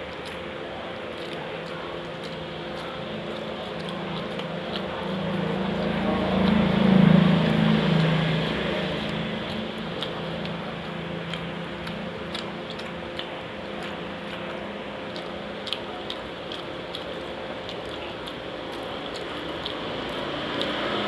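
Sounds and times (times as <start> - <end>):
person chewing: 1.1 - 21.0
motor vehicle passing: 4.0 - 11.4, 19.2 - 21.0.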